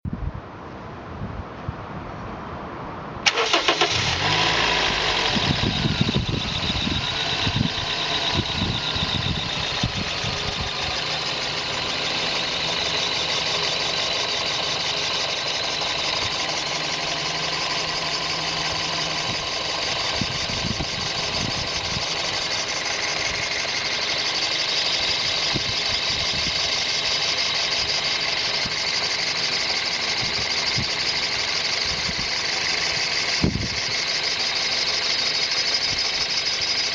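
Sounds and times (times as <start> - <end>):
car engine idling: 3.2 - 36.9
high-pitched whine: 3.5 - 36.9.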